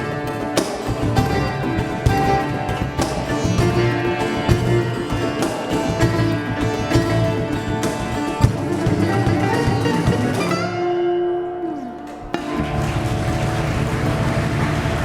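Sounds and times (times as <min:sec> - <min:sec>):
bass: 0:00.0 - 0:10.9, 0:11.8 - 0:15.0
sharp percussive strikes: 0:00.0 - 0:10.9
tabla: 0:00.0 - 0:11.1, 0:11.7 - 0:15.0
fusion ensemble playing: 0:00.0 - 0:15.0
sitar melody: 0:00.0 - 0:15.0.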